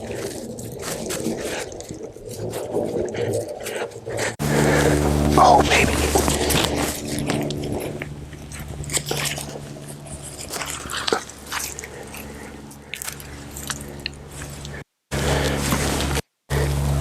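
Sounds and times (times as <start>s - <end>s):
hands digging in soil: 4.4s - 16.8s
low steady hum: 4.4s - 17.0s.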